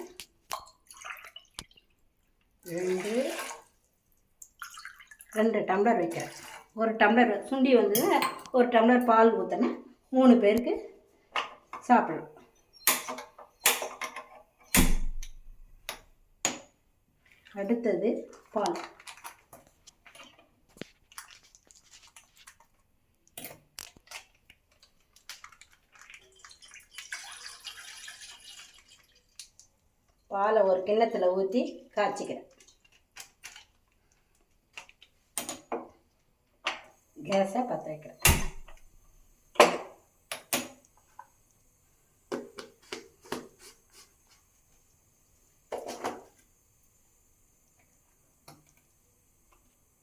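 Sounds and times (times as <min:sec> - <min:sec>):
kitchen vessels clicking: 0:07.3 - 0:08.7, 0:12.8 - 0:14.4.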